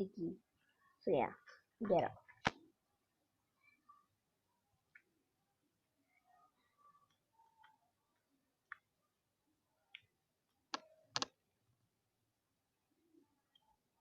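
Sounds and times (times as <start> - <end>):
faint clicks and pops: 7.0 - 9.0, 9.9 - 11.4.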